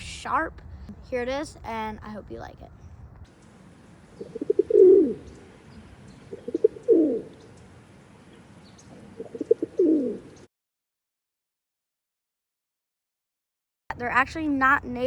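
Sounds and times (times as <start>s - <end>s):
pigeon cooing: 4.2s - 7.6s, 8.9s - 10.5s.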